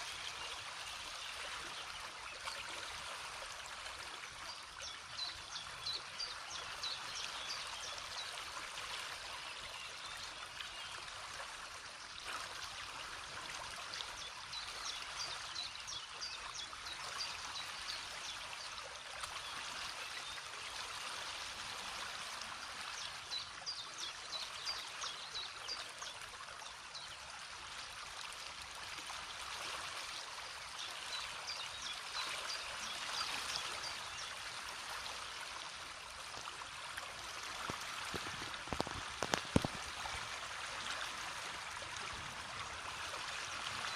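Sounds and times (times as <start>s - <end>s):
stream rushing: 32.8s - 43.9s.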